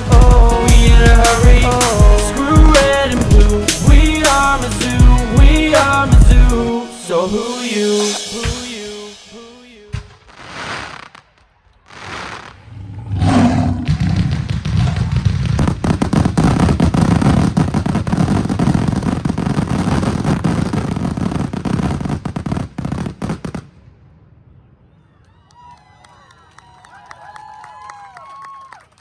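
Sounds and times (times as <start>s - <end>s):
fireworks rushing bursts: 0.0s - 6.1s, 7.1s - 23.9s
fireworks bangs and crackles: 0.0s - 6.4s, 9.9s - 25.0s.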